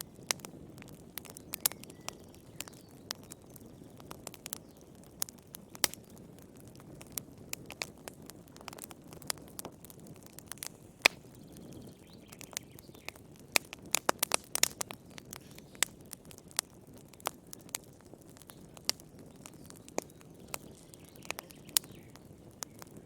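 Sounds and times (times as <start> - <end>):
wood fire crackling: 0.0 - 23.0.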